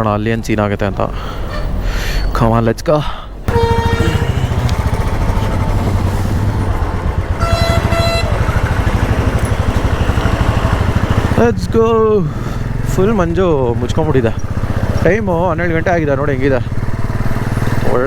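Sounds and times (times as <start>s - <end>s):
horn short beeps: 3.5s - 5.2s, 7.4s - 10.8s
motorcycle engine running: 3.5s - 18.0s.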